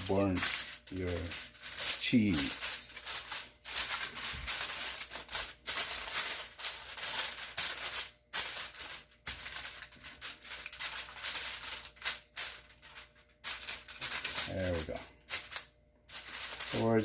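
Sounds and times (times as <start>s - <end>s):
aluminium foil crinkling: 0.0s - 17.0s.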